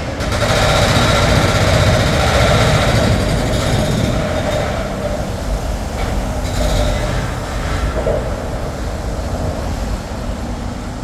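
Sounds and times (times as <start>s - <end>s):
jackhammer hammering: 0.0s - 7.2s.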